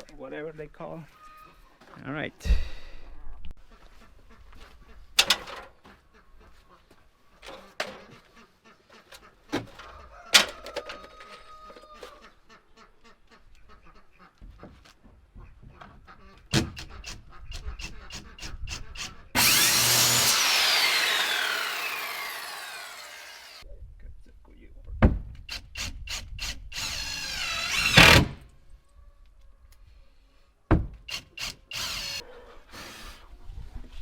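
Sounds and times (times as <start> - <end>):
power saw cutting wood: 18.1 - 23.6, 25.5 - 28.4, 31.1 - 33.2.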